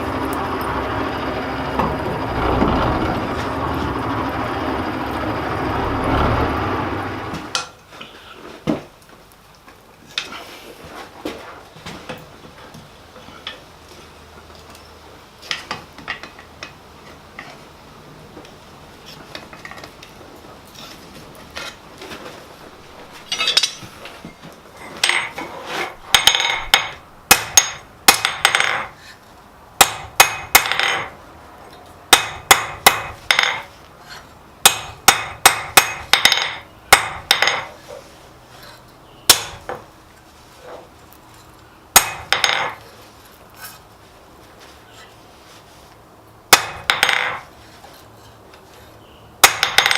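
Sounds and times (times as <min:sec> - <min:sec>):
hammer striking steel on anvil: 0:23.3 - 0:24.0, 0:26.1 - 0:28.9, 0:29.8 - 0:31.1, 0:32.1 - 0:33.7, 0:34.6 - 0:37.7, 0:39.3 - 0:39.8, 0:42.0 - 0:42.8, 0:46.5 - 0:47.4.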